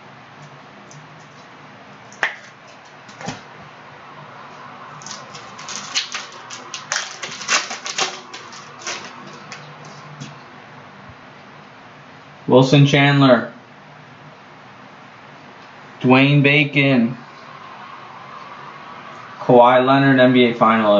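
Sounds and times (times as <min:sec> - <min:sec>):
foil pack tearing and crinkling: 0:05.0 - 0:10.0.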